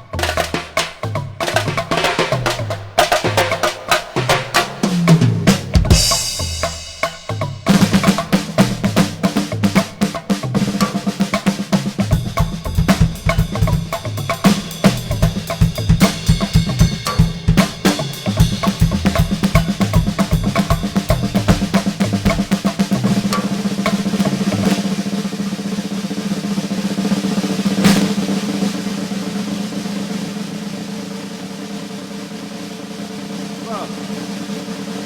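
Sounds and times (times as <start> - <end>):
drum kit played fast: 0.0 - 35.0
cymbal crash: 0.2 - 9.2, 27.7 - 35.0.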